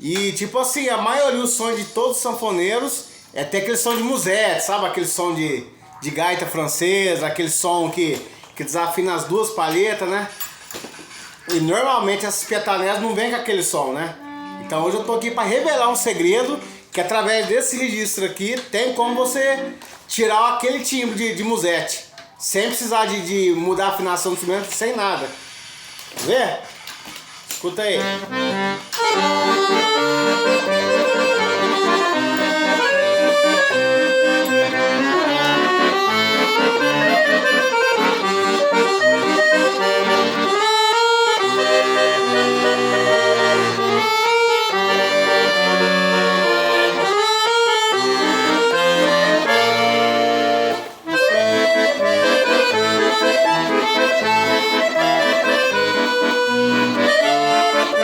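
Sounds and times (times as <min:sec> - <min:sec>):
accordion playing a tune: 0:00.4 - 0:05.2, 0:11.0 - 0:18.2, 0:27.5 - 0:58.0.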